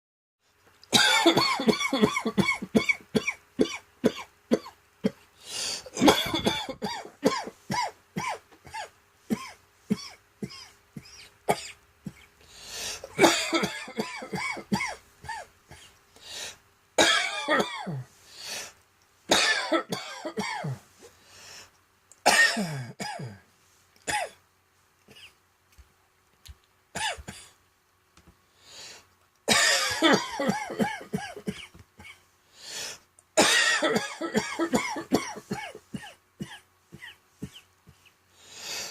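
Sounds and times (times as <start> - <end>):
person coughing hoarsely: 0.9 - 5.2, 5.8 - 12.3, 13.0 - 15.9, 17.0 - 18.1, 19.3 - 20.8, 22.2 - 23.4, 27.0 - 27.6, 29.5 - 32.2, 33.4 - 37.7.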